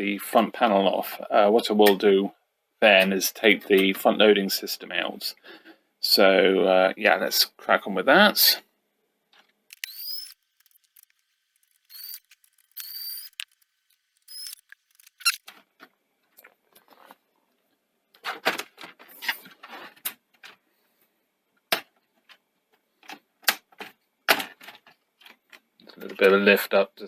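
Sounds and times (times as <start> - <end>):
plastic clicks and rattling: 9.7 - 15.4
short high squeaks: 9.7 - 15.4.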